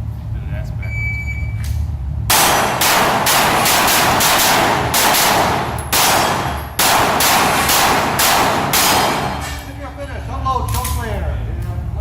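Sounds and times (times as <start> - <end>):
pistol shots: 2.3 - 9.7.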